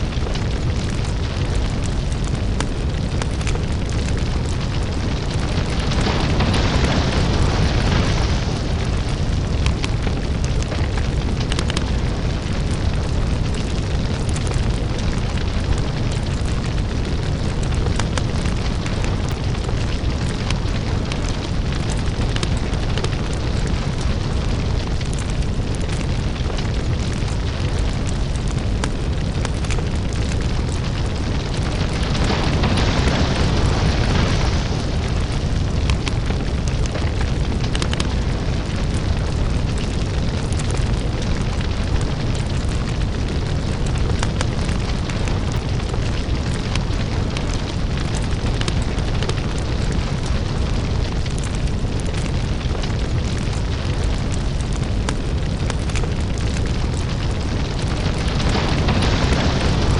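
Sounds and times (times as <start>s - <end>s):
deep lava rumble: 0.0s - 59.9s
fire crackles and pops: 0.0s - 59.9s.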